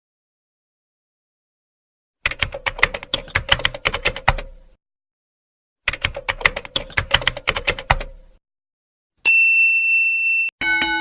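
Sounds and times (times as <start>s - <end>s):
multi-tone chime: 9.3s - 11.0s
typewriter bell ding: 9.3s - 11.0s.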